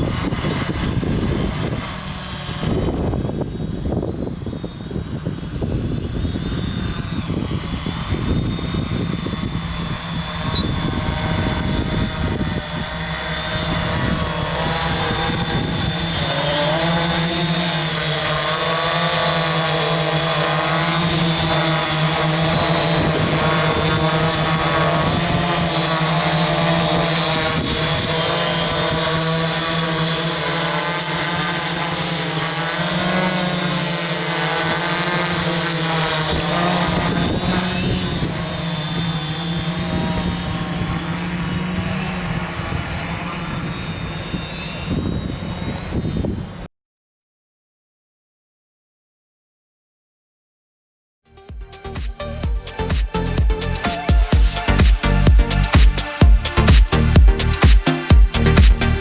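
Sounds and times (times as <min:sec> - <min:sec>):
wind buffeting microphone: 0:00.0 - 0:16.8, 0:21.0 - 0:29.6, 0:36.1 - 0:46.7
drone propellers whining: 0:00.0 - 0:46.7, 0:51.3 - 0:59.0.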